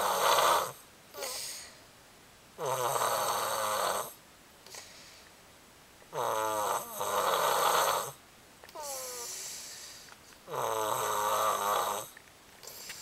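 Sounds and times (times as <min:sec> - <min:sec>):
loud snoring with whistling rattle: 0:00.0 - 0:00.8, 0:02.6 - 0:04.2, 0:06.1 - 0:08.2, 0:10.5 - 0:12.9.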